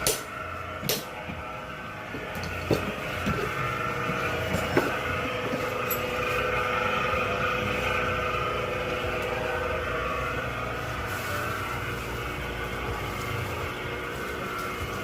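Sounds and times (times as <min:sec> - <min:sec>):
mixer machine whine and hum: 0:00.0 - 0:15.0.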